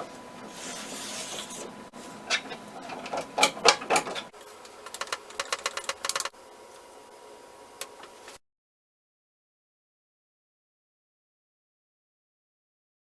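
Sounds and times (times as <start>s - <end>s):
sharp mechanical clicks and taps: 4.9s - 6.4s.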